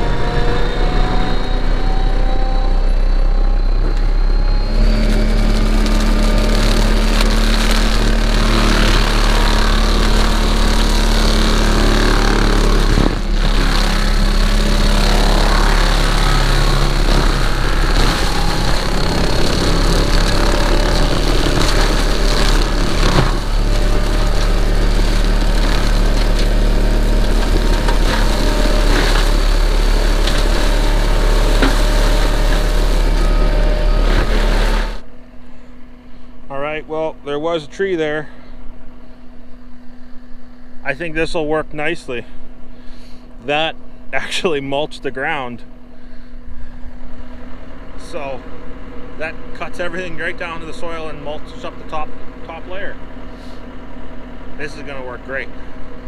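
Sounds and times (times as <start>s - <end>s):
high even whine of mulcher: 0.0s - 56.0s
skid steer engine drone: 0.0s - 56.0s
sharp cracks of wood grinding: 4.6s - 35.1s.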